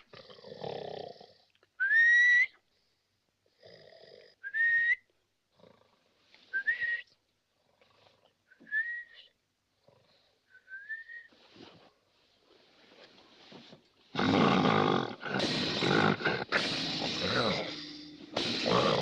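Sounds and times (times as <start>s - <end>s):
man snoring: 14.2s - 19.0s.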